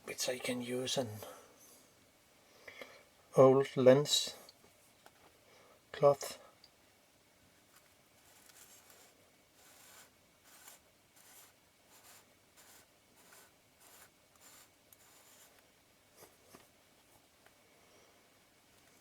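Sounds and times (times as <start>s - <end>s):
cloth wiping metal: 8.2s - 15.6s.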